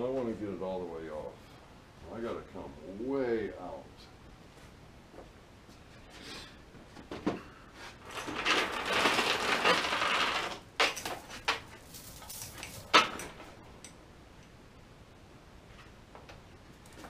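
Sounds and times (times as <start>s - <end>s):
metal rattling and clattering: 8.0s - 14.0s.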